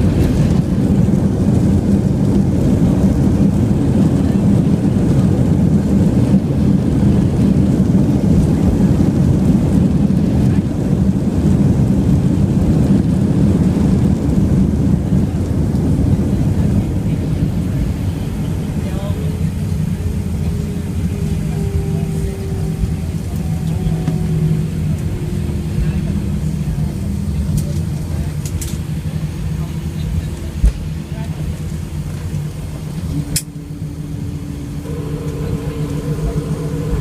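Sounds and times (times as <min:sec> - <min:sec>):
airplane cabin rumble: 0:00.0 - 0:37.0.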